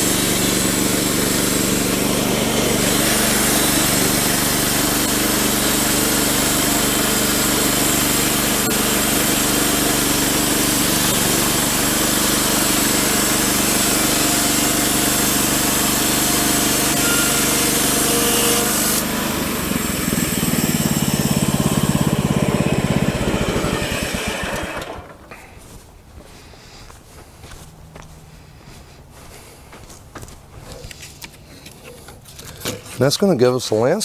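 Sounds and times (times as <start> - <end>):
saw blade hissing through wood: 0.0 - 19.3
gas engine running under load: 0.0 - 33.1.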